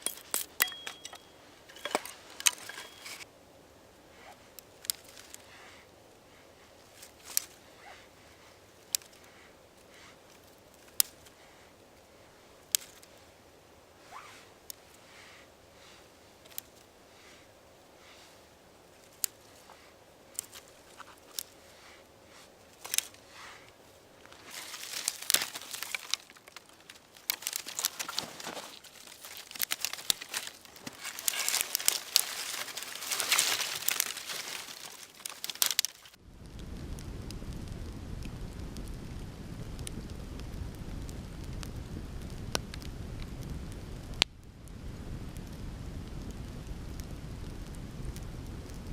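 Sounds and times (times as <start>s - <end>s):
dry branches cracking: 0.0s - 3.3s, 4.6s - 5.5s, 6.8s - 7.6s, 8.8s - 11.4s, 12.6s - 13.2s, 16.4s - 16.9s, 18.9s - 19.7s, 20.3s - 36.6s.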